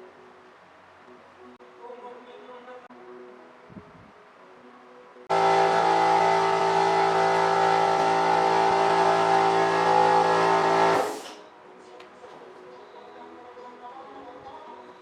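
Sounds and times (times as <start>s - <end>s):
two-stroke engine running: 5.3s - 11.4s.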